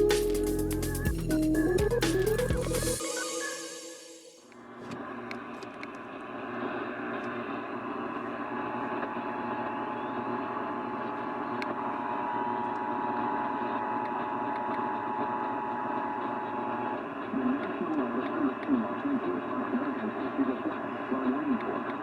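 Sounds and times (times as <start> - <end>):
steady alert tone: 0.6 - 4.4
radio static and hiss: 16.8 - 22.0.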